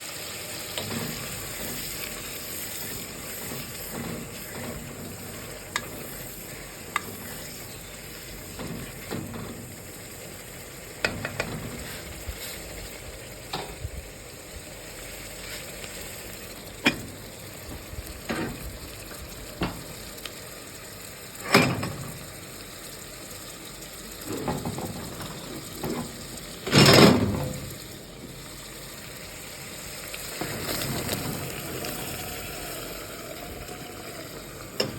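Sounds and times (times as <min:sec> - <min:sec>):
food sizzling in a frying pan: 0:00.0 - 0:34.9
utensil scraping a pan: 0:00.6 - 0:09.6.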